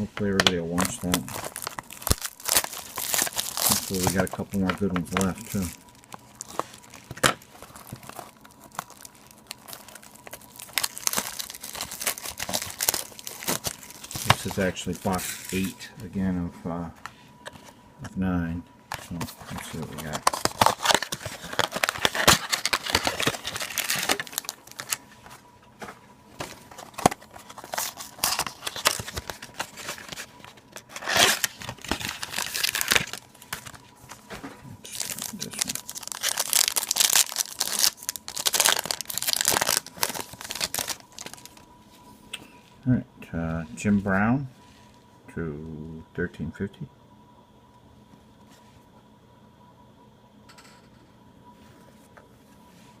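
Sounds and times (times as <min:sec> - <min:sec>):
packaging crinkling and tearing: 0:00.3 - 0:15.8, 0:18.9 - 0:25.4, 0:26.4 - 0:34.2, 0:34.8 - 0:41.7.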